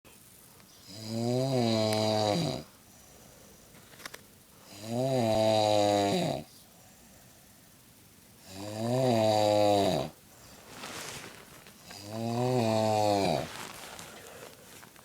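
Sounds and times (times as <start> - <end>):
woman snoring: 0.8 - 2.7, 4.7 - 6.5, 8.4 - 10.2, 11.8 - 13.5.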